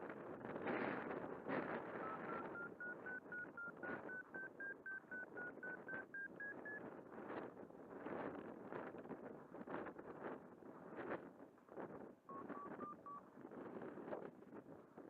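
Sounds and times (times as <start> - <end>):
short electronic beeps: 2.0 - 6.8, 12.3 - 13.2.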